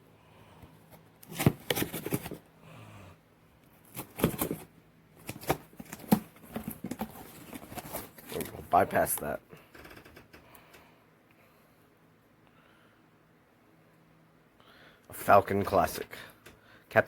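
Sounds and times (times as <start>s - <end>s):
packaging rustling and clicks: 1.2s - 2.4s, 3.8s - 9.2s.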